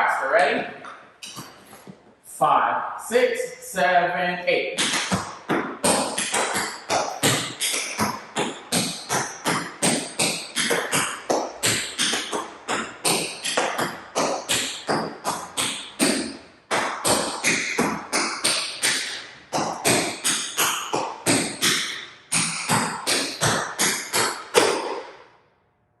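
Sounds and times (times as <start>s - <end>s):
tap shoes tap dancing: 4.8s - 25.1s.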